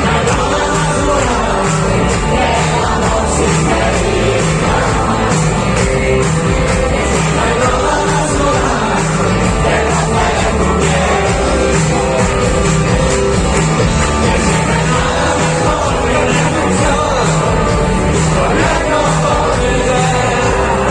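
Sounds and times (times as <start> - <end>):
amplified vocals: 0.0 - 20.9
live rock band playing: 0.0 - 20.9.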